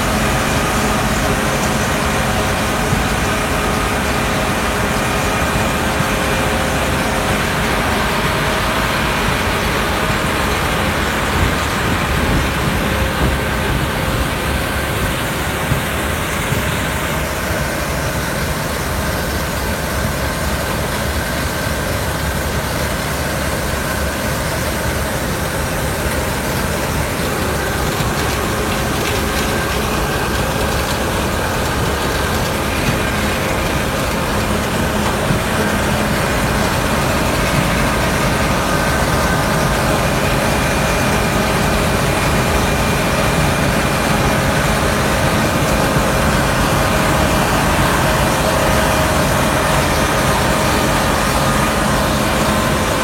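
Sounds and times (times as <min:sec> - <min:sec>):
engine running: 0:00.0 - 0:53.0.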